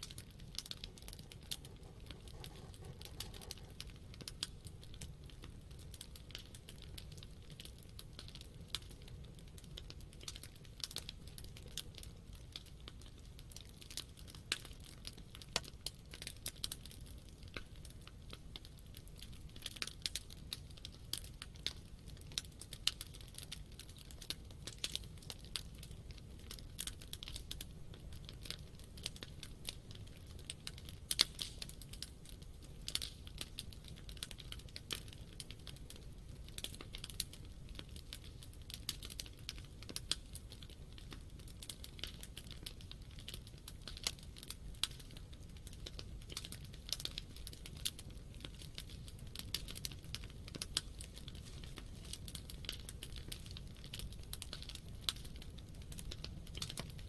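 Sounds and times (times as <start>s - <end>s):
low rumble of flames: 0.0s - 57.0s
wood crackling and popping: 0.0s - 57.0s.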